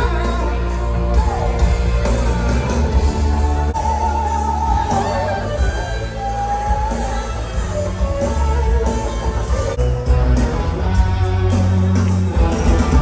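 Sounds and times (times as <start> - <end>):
person singing: 0.0 - 9.8
electric guitars: 0.0 - 13.0
heavy bass: 0.0 - 13.0.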